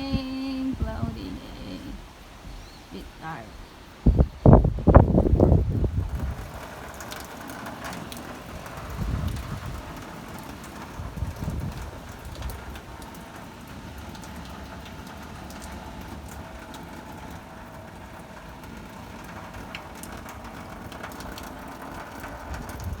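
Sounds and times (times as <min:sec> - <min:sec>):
steady rain falling: 0:00.0 - 0:23.0.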